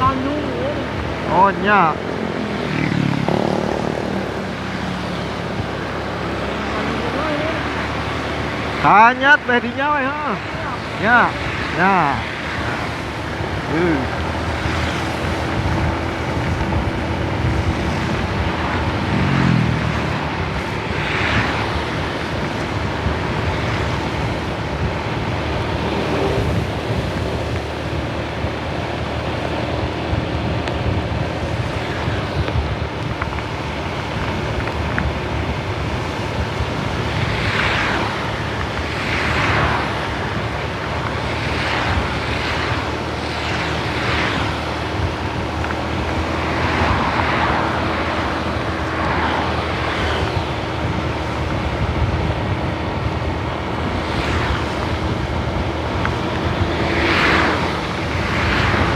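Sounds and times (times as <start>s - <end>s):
engines rumbling: 0.0s - 58.9s
tyre spray from passing vehicles: 0.0s - 58.9s
tyre hiss on wet road: 35.8s - 51.4s, 54.0s - 54.9s.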